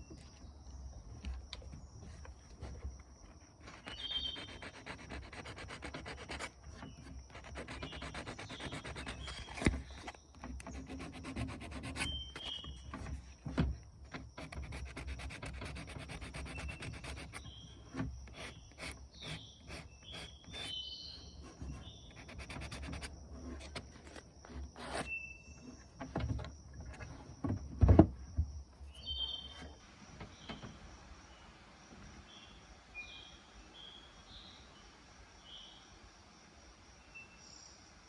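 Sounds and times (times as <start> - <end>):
hand rubbing on wood: 2.0 - 13.3, 14.1 - 25.1
short squeaks: 6.1 - 13.1.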